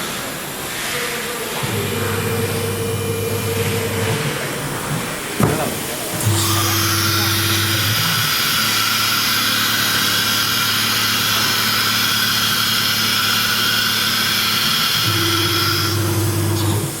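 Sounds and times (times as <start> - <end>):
router spindle high-pitched whine: 1.6 - 4.2, 6.1 - 17.0
deeper hum: 1.6 - 4.4.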